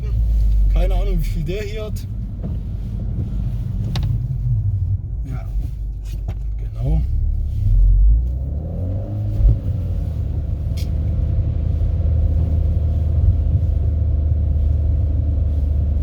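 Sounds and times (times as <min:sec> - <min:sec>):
car engine rumble from cabin: 0:00.0 - 0:16.0
thump: 0:02.4 - 0:02.8.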